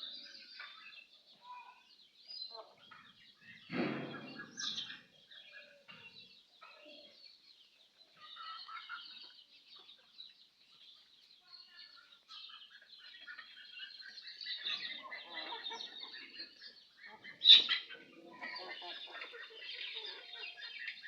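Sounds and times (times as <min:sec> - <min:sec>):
chickens clucking: 0:00.0 - 0:21.0.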